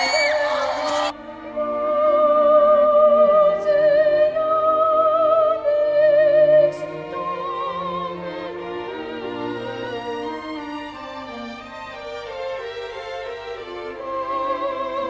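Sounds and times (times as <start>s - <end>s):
operatic singing with vibrato: 0.0s - 5.8s.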